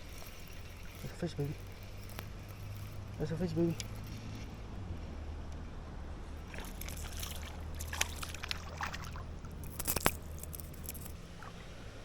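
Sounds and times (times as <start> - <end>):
fish splashing in water: 6.4 - 11.9.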